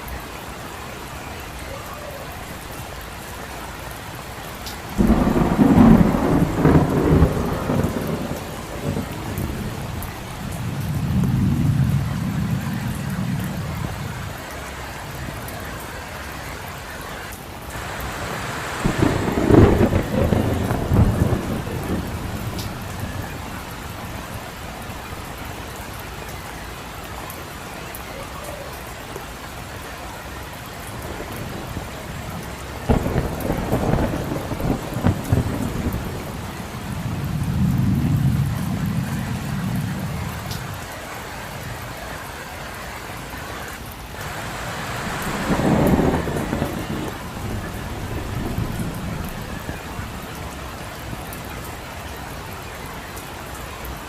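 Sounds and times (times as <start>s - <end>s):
rain falling on a street: 0.0s - 54.0s
thunder rumbling: 4.3s - 15.8s, 17.7s - 26.3s, 30.6s - 42.2s, 43.6s - 53.2s.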